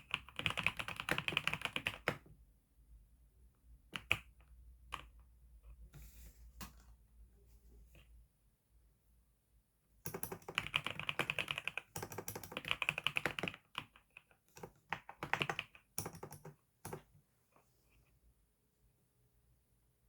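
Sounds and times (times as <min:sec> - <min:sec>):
keyboard typing: 0:00.0 - 0:02.2, 0:10.1 - 0:17.1.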